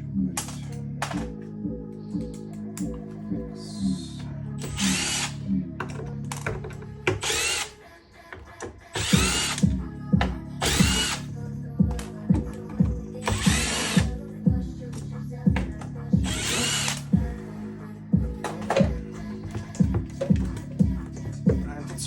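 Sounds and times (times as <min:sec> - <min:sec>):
cordless drill whining: 0:04.6 - 0:05.5, 0:06.4 - 0:09.8, 0:10.6 - 0:11.3, 0:12.5 - 0:14.2, 0:15.6 - 0:17.5
background music with drum beat: 0:09.0 - 0:11.2, 0:11.8 - 0:14.7, 0:15.5 - 0:17.4, 0:18.1 - 0:22.0.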